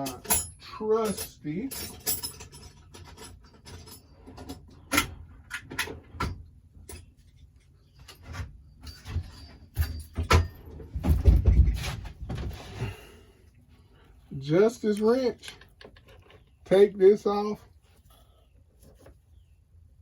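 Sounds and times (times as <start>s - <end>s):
hand tools clinking and knocking: 0.0s - 12.6s.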